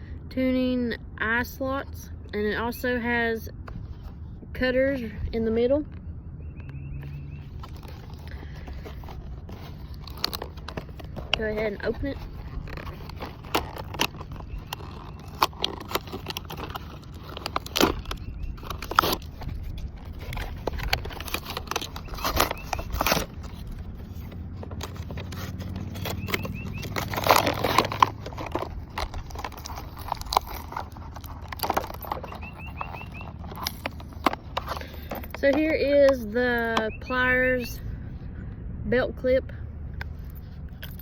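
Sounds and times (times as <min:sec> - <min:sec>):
packaging being opened: 0:07.4 - 0:35.7
tools clicking and scraping: 0:07.4 - 0:36.9, 0:40.0 - 0:41.0.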